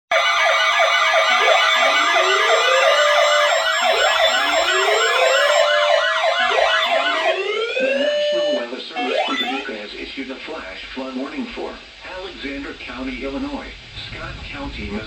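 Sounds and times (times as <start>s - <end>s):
siren wail: 0.1s - 9.7s
siren yelp: 0.1s - 9.8s
steady siren tones: 0.1s - 9.8s.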